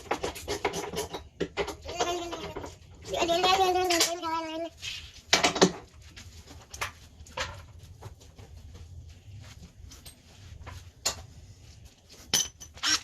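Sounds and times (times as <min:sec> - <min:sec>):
hand tools clicking and knocking: 0:00.0 - 0:04.3, 0:05.3 - 0:08.2, 0:12.2 - 0:13.0.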